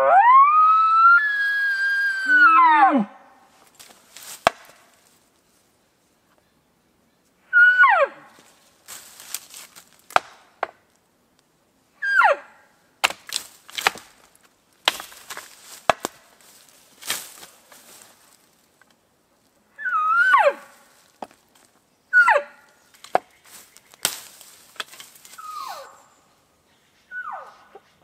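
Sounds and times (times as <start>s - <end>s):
sticks snapping and cracking: 3.6s - 5.0s, 8.9s - 11.5s, 13.0s - 19.0s, 22.9s - 25.4s.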